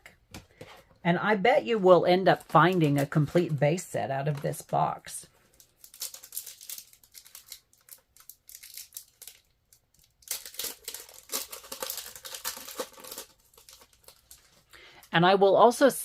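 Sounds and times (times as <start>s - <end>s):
card pack wrapper crinkling: 2.2s - 4.8s, 5.4s - 14.7s.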